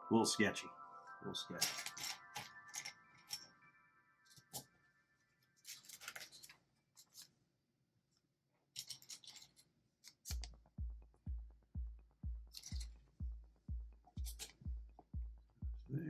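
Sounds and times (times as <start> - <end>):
plastic pieces clicking and rattling: 5.6 - 7.3, 8.8 - 10.4
music with steady bass beat: 10.3 - 16.0.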